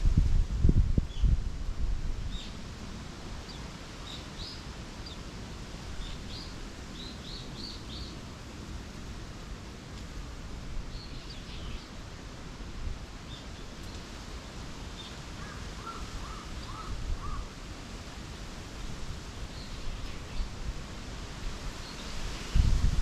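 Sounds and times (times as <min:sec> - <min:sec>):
wind rumble on microphone: 0:00.0 - 0:04.6, 0:15.4 - 0:23.0.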